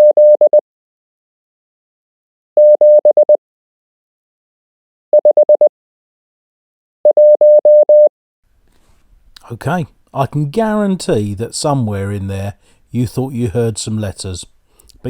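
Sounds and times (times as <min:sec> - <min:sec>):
morse code beeps: 0:00.0 - 0:00.6, 0:02.6 - 0:03.4, 0:07.1 - 0:08.1.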